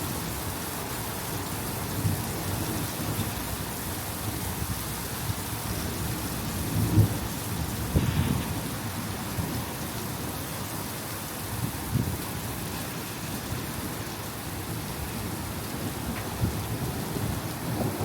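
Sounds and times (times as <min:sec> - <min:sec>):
heavy rain falling: 0:00.0 - 0:18.0
thunder rumbles: 0:05.8 - 0:09.9, 0:14.8 - 0:18.0.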